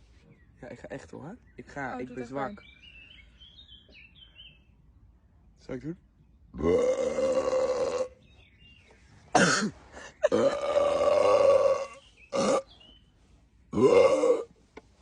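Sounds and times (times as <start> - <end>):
person burping: 6.6 - 8.2, 9.4 - 12.7, 13.7 - 14.5.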